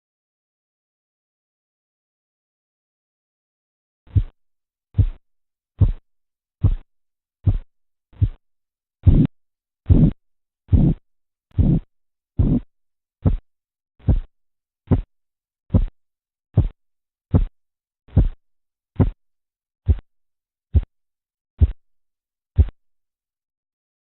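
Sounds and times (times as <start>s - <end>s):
pulse thumps through stethoscope: 4.1s - 4.4s, 5.0s - 5.2s, 5.8s - 6.0s, 6.6s - 8.4s, 9.0s - 9.3s, 9.9s - 13.4s, 14.0s - 14.3s, 14.9s - 15.1s, 15.7s - 16.0s, 16.6s - 18.4s, 19.0s - 19.2s, 19.8s - 20.1s, 20.7s - 20.9s, 21.6s - 21.8s, 22.6s - 22.8s.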